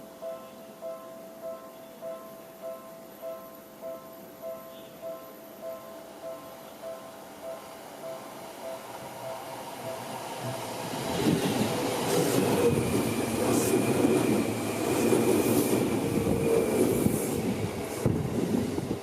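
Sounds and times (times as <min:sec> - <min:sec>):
train wheels on rails: 0:07.6 - 0:19.0.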